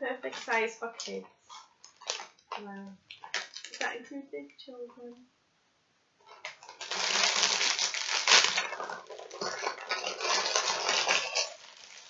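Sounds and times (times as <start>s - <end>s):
plastic packaging crinkling: 0.2s - 4.0s, 6.3s - 12.0s.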